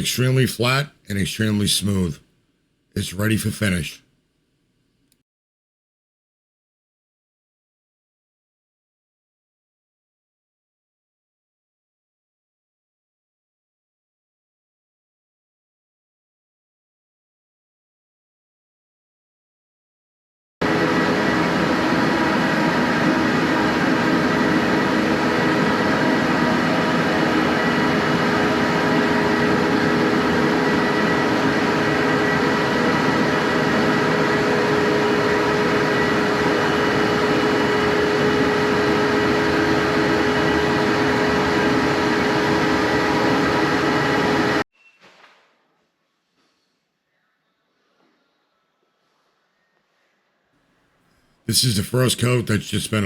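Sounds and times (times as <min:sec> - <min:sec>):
floor machine motor humming: 0:20.6 - 0:44.6.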